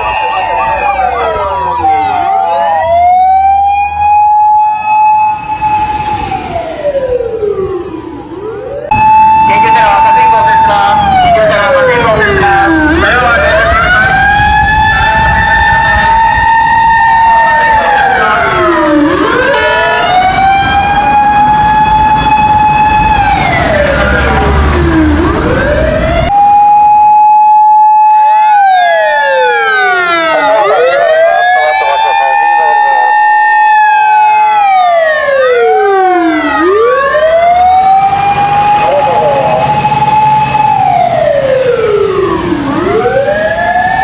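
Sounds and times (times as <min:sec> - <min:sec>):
mechanical siren wailing: 0:00.0 - 0:44.0
second siren tone: 0:08.8 - 0:11.4, 0:19.3 - 0:20.2.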